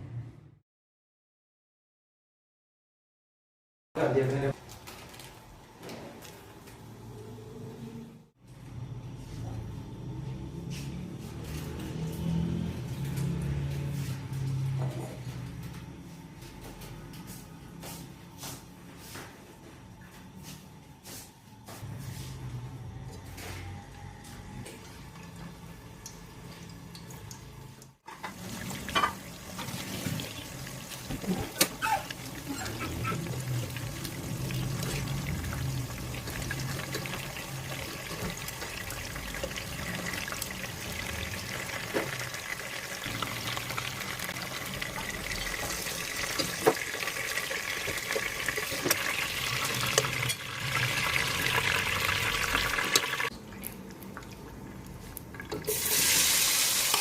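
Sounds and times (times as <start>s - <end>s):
food sizzling in a pan: 28.1s - 53.3s, 55.7s - 57.0s.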